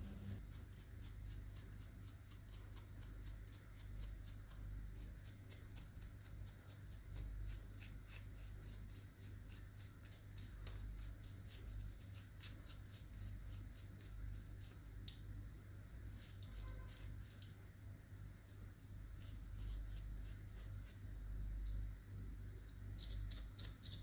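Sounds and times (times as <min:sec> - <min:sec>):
low steady hum: 0:00.0 - 0:24.0
rapid scratching strokes: 0:19.2 - 0:21.1.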